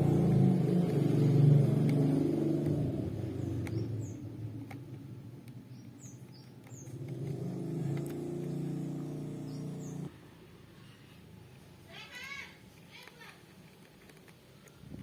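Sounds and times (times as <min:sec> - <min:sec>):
bird chirps: 0:03.2 - 0:04.4, 0:05.6 - 0:10.1.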